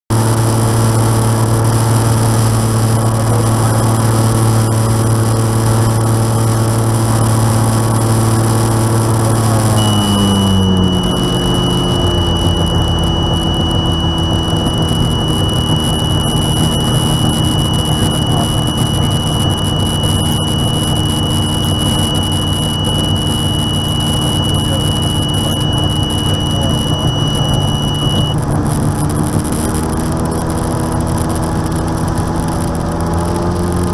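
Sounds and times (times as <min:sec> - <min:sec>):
aircraft piston engine running: 0:00.2 - 0:32.0
high-pitched warning horn: 0:09.2 - 0:28.4.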